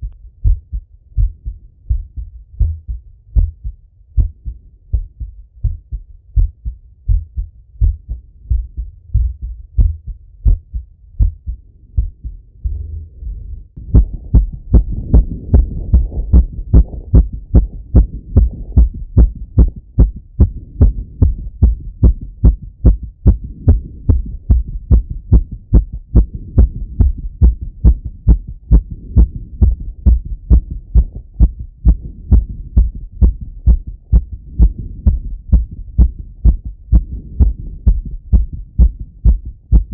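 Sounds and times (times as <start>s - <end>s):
heartbeat through stethoscope: 0.0s - 39.9s
low rushing noise: 11.8s - 22.1s.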